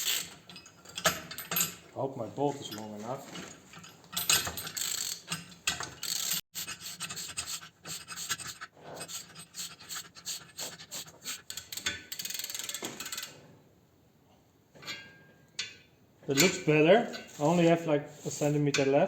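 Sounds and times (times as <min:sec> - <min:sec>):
ratchet wrench clicking: 0:00.0 - 0:00.4, 0:04.2 - 0:06.8, 0:08.3 - 0:13.3.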